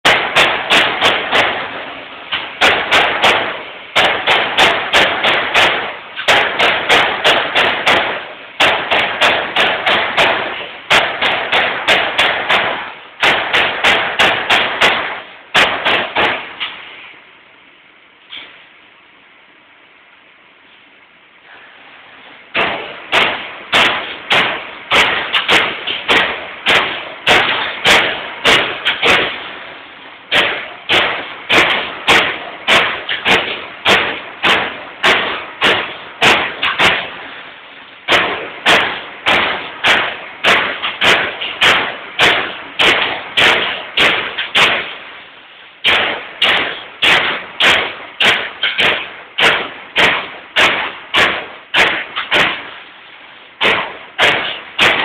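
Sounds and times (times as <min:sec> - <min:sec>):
punch press striking sheet metal: 0:00.0 - 0:17.0, 0:22.5 - 0:55.0.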